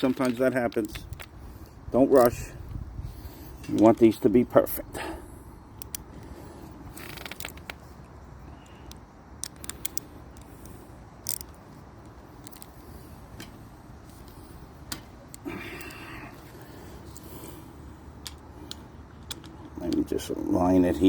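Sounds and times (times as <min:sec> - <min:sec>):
brief rustle: 0:06.9 - 0:08.0
hand tool clicks and taps: 0:08.8 - 0:12.7.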